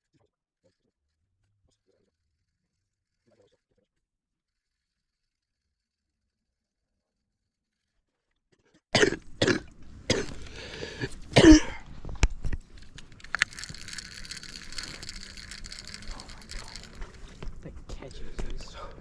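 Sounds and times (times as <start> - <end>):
person coughing: 9.0 - 11.8.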